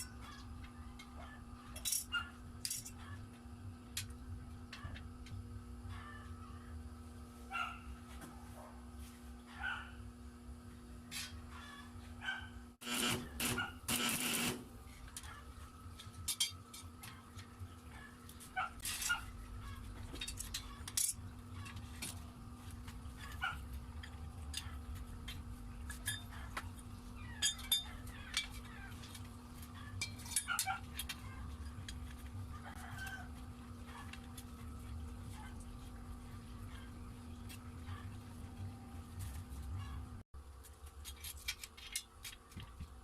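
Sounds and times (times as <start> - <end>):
steady low hum: 0.0 - 41.1
dog barking: 1.2 - 2.4, 7.5 - 8.9, 9.5 - 10.0, 11.5 - 12.6, 17.9 - 19.8, 23.2 - 23.6, 30.4 - 31.4.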